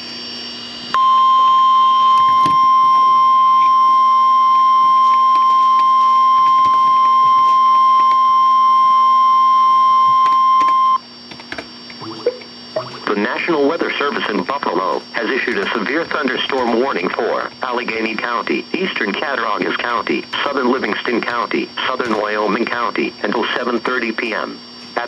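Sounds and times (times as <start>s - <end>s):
steady high alarm beep: 0.9s - 11.0s.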